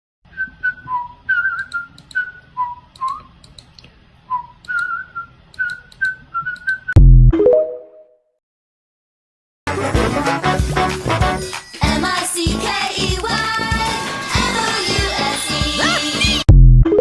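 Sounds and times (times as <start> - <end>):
person whistling a tune: 0.3 - 3.3, 4.3 - 7.0
sharp little clicks: 1.5 - 2.3, 2.9 - 3.9, 4.6 - 7.0.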